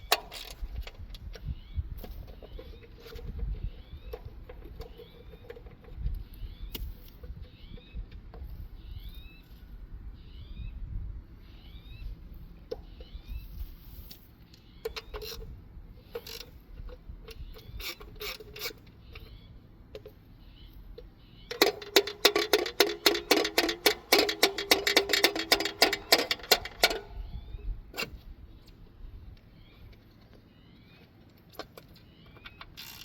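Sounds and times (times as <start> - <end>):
ratchet wrench clicking: 21.5 - 27.2, 32.8 - 33.0.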